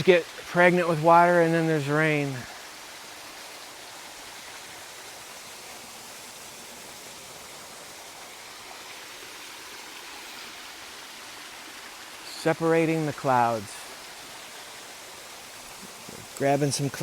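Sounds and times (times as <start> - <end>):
waterfall and stream rushing: 0.0 - 17.0.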